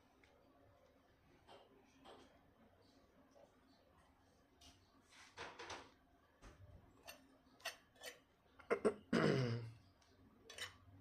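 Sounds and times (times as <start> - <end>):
low throat sound: 8.8 - 9.7.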